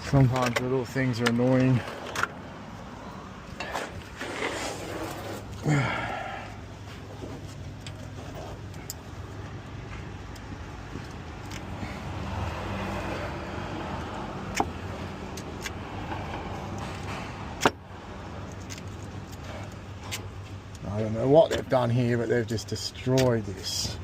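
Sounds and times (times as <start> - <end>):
small metallic clicks: 7.5 - 11.8, 18.4 - 21.7.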